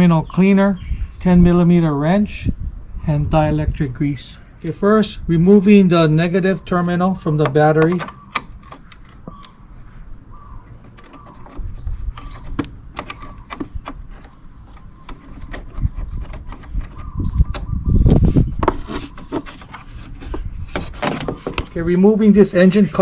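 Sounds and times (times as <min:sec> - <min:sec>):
metal clattering and scraping: 0:10.8 - 0:21.8.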